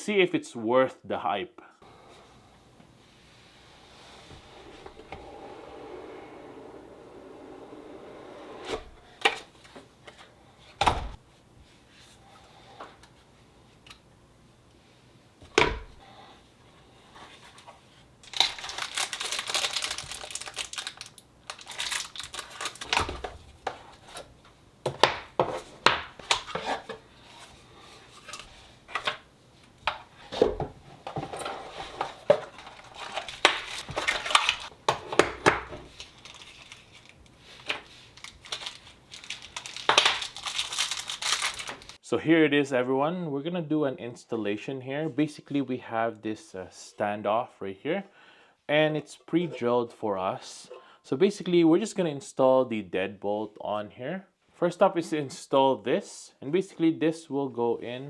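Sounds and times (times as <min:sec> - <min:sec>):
plastic and paper crinkling: 0:17.4 - 0:24.3, 0:31.0 - 0:42.0.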